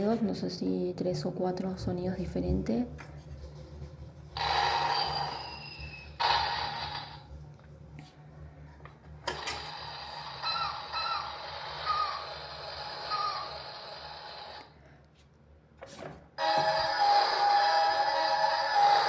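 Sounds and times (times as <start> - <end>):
toy electronic chirping effect: 9.9 - 14.6.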